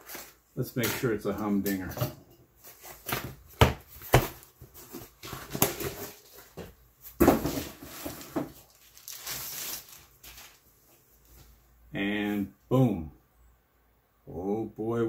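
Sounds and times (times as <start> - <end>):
wrapping rustling: 7.6 - 11.5.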